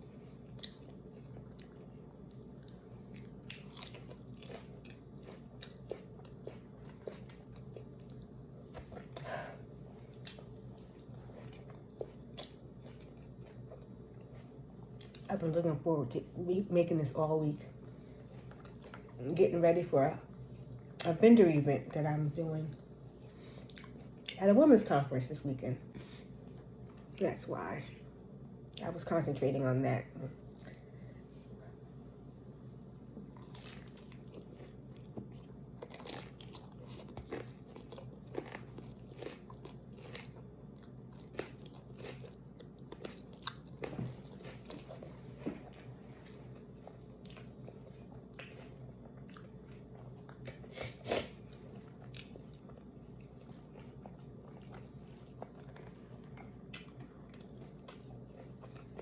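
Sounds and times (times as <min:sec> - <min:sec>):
tortilla chips crunching: 0:00.5 - 0:09.3, 0:33.3 - 0:45.9.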